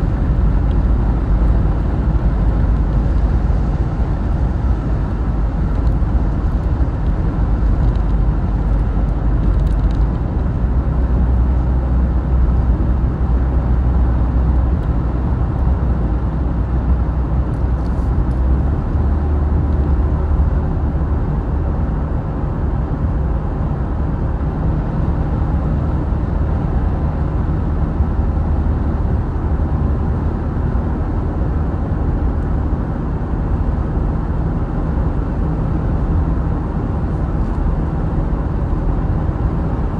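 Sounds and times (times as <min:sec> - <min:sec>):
vehicle engine and road noise: 0:00.0 - 0:39.9.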